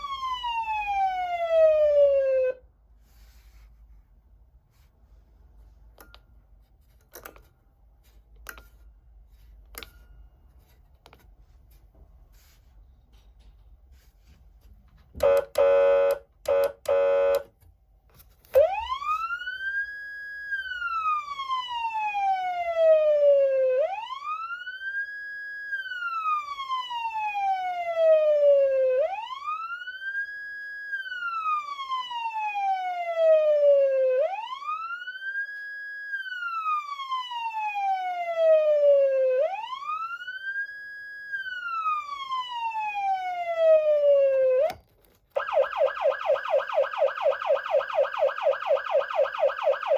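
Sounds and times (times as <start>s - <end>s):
electronic siren wail: 0.0s - 2.6s, 18.6s - 44.8s, 45.4s - 49.9s.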